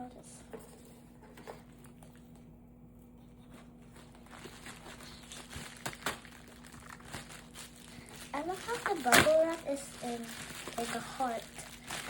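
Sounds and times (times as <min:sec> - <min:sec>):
low steady hum: 0:00.0 - 0:12.0
plastic packaging rustling and clicking: 0:03.5 - 0:12.0.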